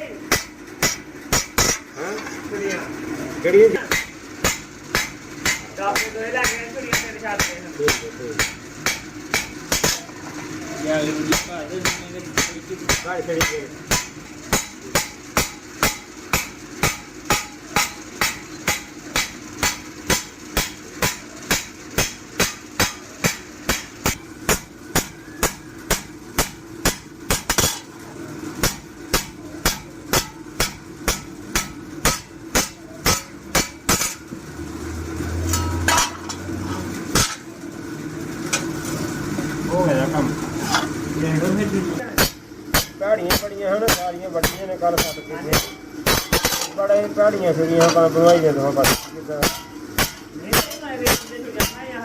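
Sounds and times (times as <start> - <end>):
hammer striking blade on anvil: 0.3 - 1.9, 3.9 - 10.1, 11.3 - 27.9, 28.6 - 34.2, 35.4 - 36.4, 37.1 - 37.4, 42.2 - 46.8, 48.8 - 51.9.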